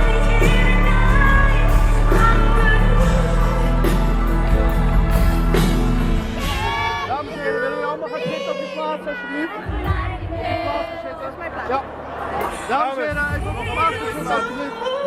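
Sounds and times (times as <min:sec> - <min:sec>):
bass: 0:00.0 - 0:07.3
person singing: 0:00.0 - 0:10.1
live pop music: 0:00.0 - 0:15.0.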